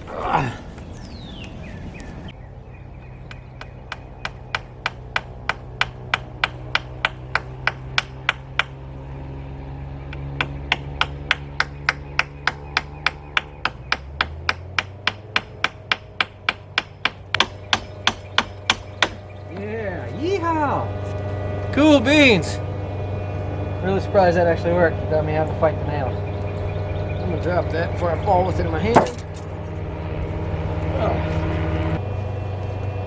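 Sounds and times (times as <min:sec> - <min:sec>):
low hum: 0:00.0 - 0:33.0
hammer driving nails into wood: 0:28.9 - 0:29.4.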